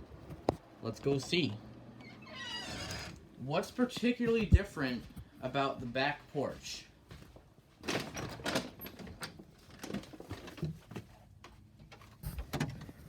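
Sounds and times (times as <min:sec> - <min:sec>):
footsteps: 0:03.6 - 0:07.8.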